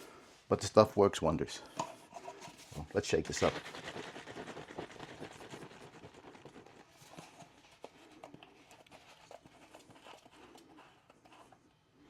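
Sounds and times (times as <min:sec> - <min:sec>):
bottle shaken with sloshing: 0:02.1 - 0:11.5.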